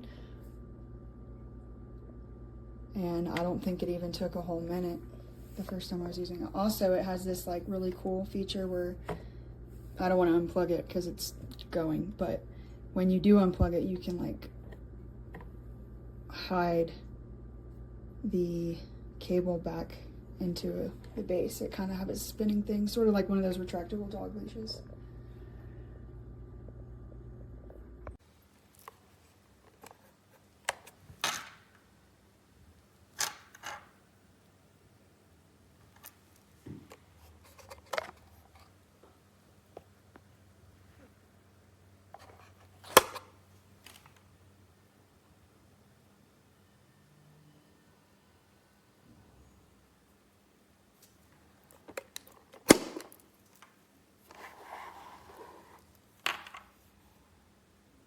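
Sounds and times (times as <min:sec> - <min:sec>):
rustling or scraping: 0:54.2 - 0:56.0.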